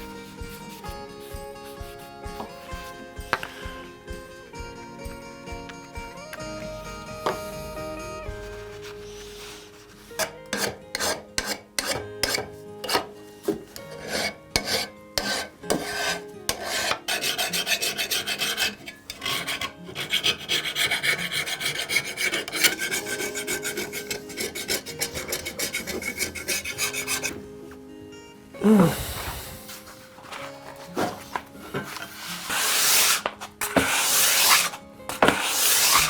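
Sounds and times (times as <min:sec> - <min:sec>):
abrasive rasping scrape on metal: 0:08.6 - 0:13.1, 0:13.7 - 0:27.4, 0:31.6 - 0:36.0.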